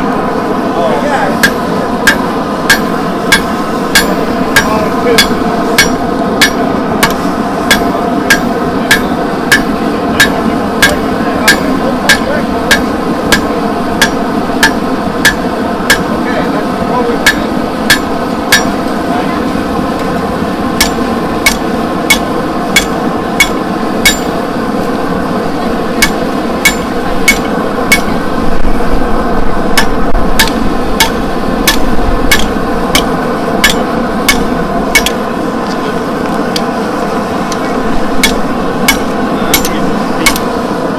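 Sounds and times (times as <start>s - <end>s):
continuous steady noise: 0.0s - 40.9s
hammer striking steel on anvil: 1.4s - 16.3s, 17.1s - 19.0s, 20.7s - 24.6s, 25.8s - 28.4s, 29.7s - 35.3s, 38.2s - 40.6s.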